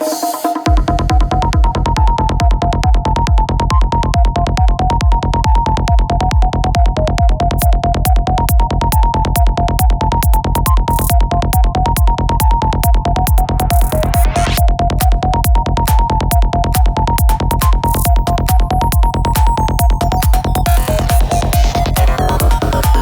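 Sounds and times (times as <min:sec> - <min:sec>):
psytrance music: 0:00.0 - 0:23.0.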